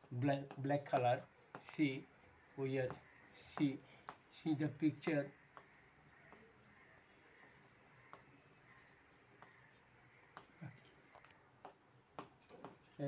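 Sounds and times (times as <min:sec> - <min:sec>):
drawing tool scratching paper: 0:05.4 - 0:10.8.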